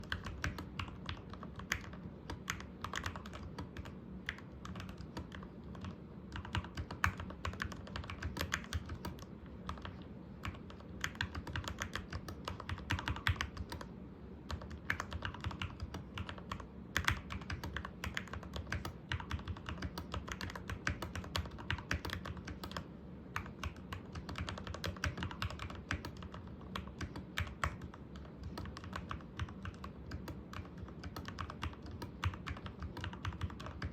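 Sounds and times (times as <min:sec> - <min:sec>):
mechanical keyboard typing: 0:00.0 - 0:33.9.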